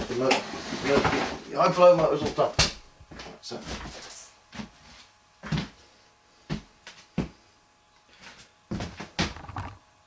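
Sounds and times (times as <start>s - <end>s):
objects being handled knocks: 9.2s - 9.8s.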